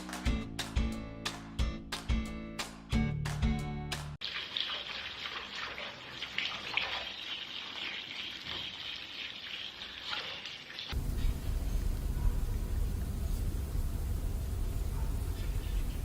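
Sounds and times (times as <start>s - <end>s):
running water splashing: 4.2s - 16.0s.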